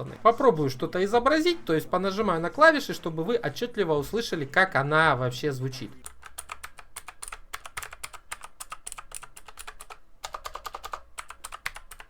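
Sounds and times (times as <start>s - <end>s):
mechanical keyboard typing: 6.0s - 12.0s.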